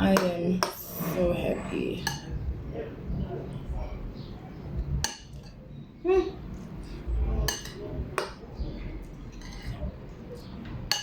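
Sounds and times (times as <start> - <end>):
cutlery clinking against dishes: 2.0 - 2.4, 5.0 - 5.6, 6.9 - 11.0.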